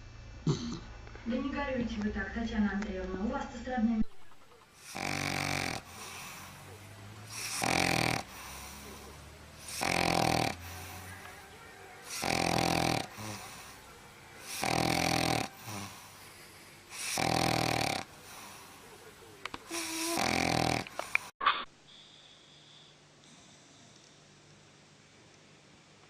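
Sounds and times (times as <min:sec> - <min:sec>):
dog snoring loudly: 0:04.8 - 0:11.2, 0:12.0 - 0:18.8, 0:19.7 - 0:21.1.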